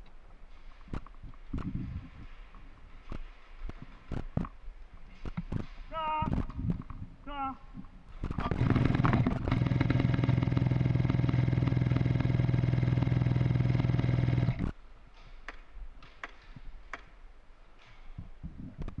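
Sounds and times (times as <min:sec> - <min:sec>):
airsoft gun full-auto burst: 0:08.4 - 0:14.6.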